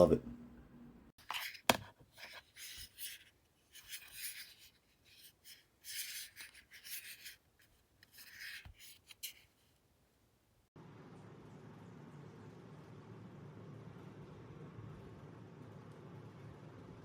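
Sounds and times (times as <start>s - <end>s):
scratchy rubbing and rustling: 1.2s - 9.8s.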